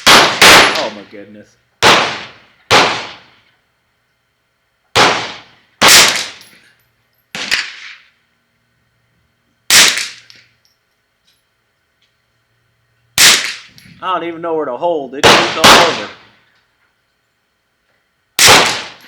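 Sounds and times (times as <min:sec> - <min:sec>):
rifle shots with echo: 0:00.0 - 0:01.1, 0:01.8 - 0:03.4, 0:05.0 - 0:06.5, 0:07.3 - 0:08.0, 0:09.7 - 0:10.3, 0:13.2 - 0:13.7, 0:15.2 - 0:16.4, 0:18.4 - 0:19.0.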